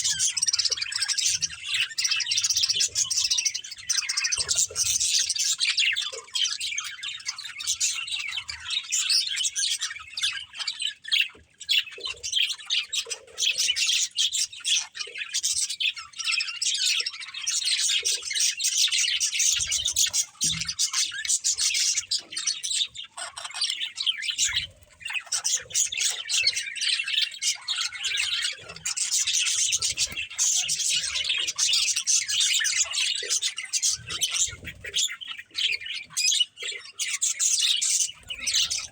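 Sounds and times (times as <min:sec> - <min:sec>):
budgerigars chattering and chirping: 0:00.0 - 0:38.9.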